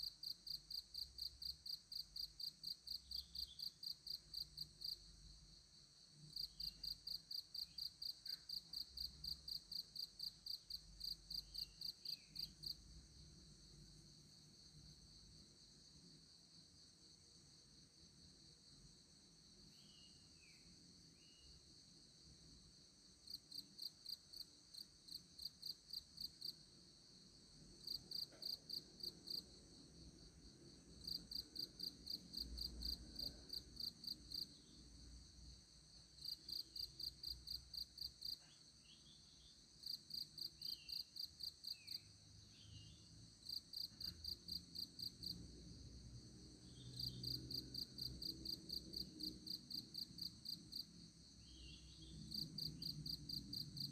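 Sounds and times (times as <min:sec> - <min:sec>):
insects chirping: 0:00.0 - 0:53.9
high-pitched insect hum: 0:23.2 - 0:53.9.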